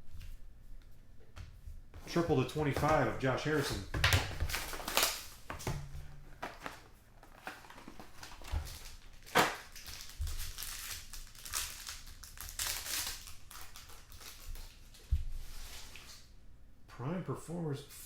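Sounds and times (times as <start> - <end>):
plastic sleeves rustling and crinkling: 2.0 - 16.3.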